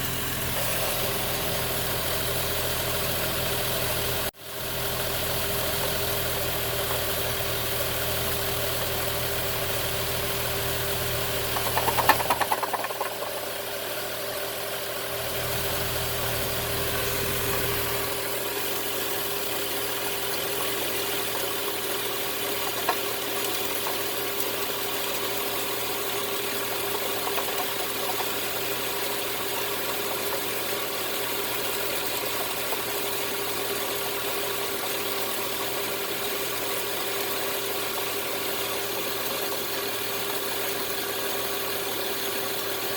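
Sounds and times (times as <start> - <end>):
brief rattle: 11.5 - 13.8, 26.8 - 28.7.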